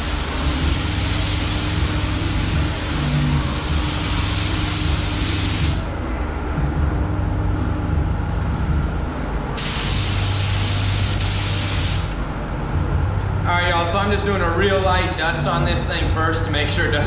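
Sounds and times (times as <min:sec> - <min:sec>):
paint spray gun hissing: 0:00.0 - 0:05.8, 0:09.6 - 0:12.2
steady low hum: 0:00.0 - 0:17.0.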